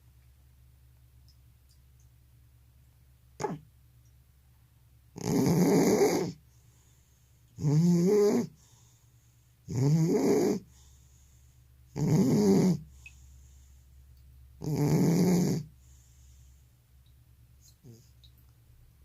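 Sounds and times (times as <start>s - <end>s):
cat snoring: 5.2s - 6.4s, 7.6s - 8.6s, 9.7s - 10.7s, 12.0s - 12.9s, 14.6s - 15.7s.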